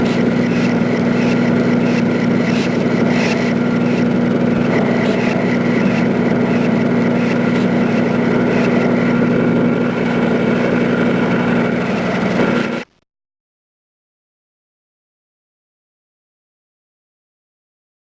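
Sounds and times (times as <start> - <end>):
factory machinery humming: 0.0 - 13.0.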